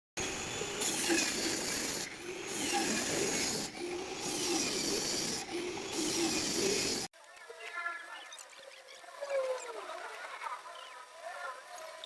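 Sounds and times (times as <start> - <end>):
hand tool rasping wood: 0.8 - 7.1.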